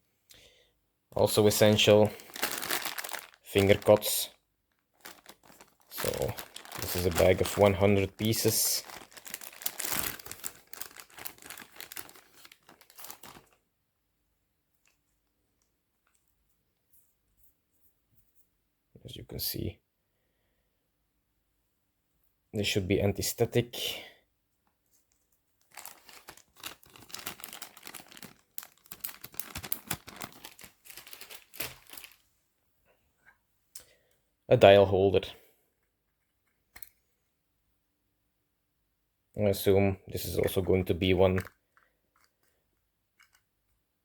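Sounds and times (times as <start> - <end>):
plastic bag crinkling: 1.3 - 13.6, 25.6 - 32.3.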